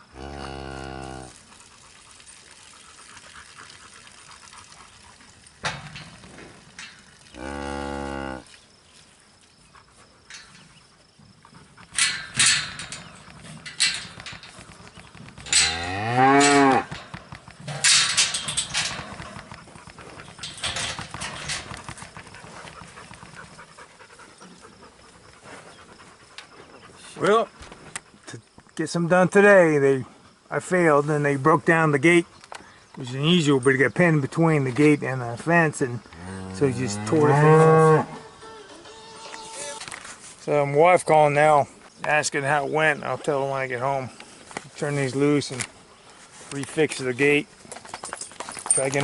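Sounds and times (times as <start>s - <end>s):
cattle mooing: 0.1s - 1.4s, 7.4s - 8.5s, 15.5s - 17.0s, 36.2s - 39.8s
clattering and banging of metal chute: 11.8s - 22.0s.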